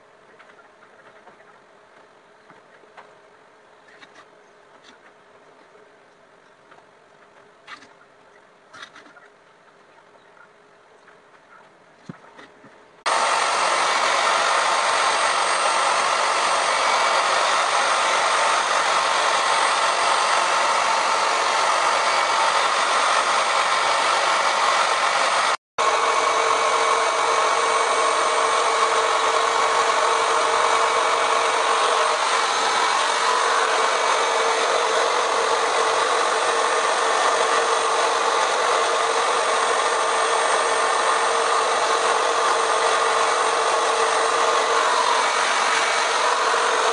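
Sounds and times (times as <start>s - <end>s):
wood router routing wood: 13.1s - 46.9s.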